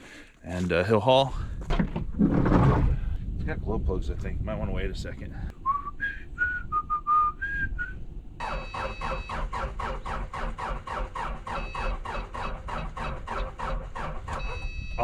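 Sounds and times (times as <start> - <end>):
person whistling: 5.6 - 8.0
diesel engine cranking: 8.4 - 15.0.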